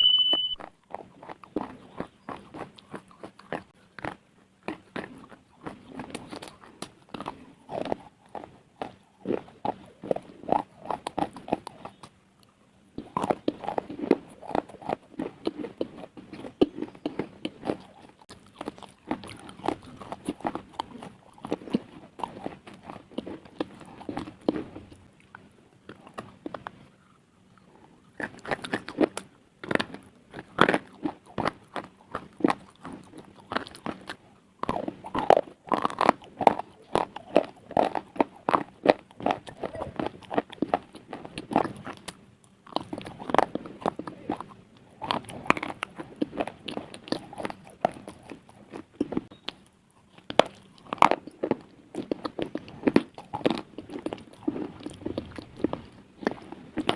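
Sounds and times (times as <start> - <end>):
biting and chewing slate: 0.2 - 56.9.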